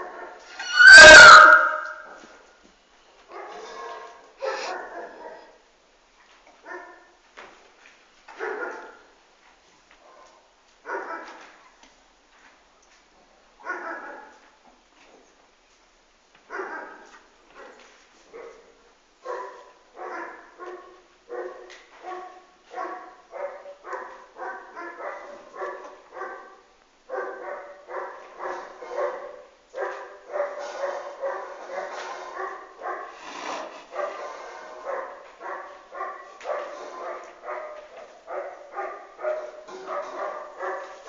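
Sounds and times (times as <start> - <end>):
horse squealing: 0.5 - 2.1.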